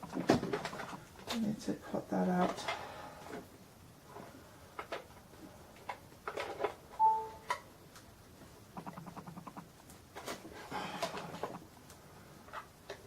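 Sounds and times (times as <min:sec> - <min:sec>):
short electronic beep: 0:07.0 - 0:07.5.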